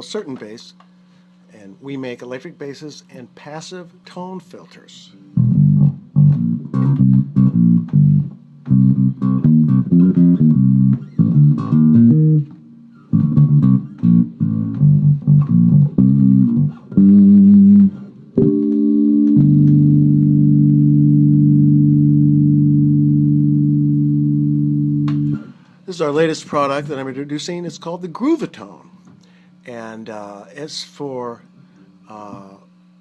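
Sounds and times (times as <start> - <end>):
electric bass guitar riff: 5.4 - 27.4.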